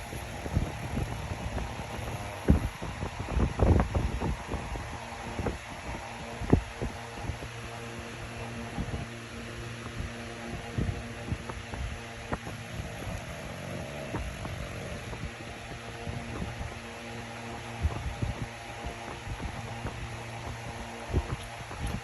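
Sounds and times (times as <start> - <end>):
steady hum: 0.0 - 22.0.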